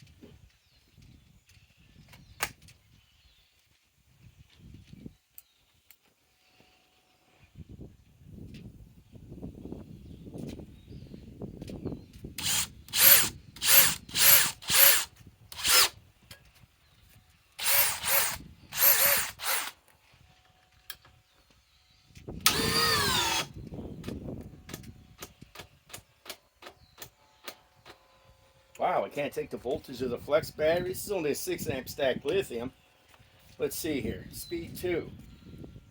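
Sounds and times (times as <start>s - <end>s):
cordless drill motor spinning: 12.4s - 16.0s, 17.6s - 19.8s, 22.4s - 23.7s.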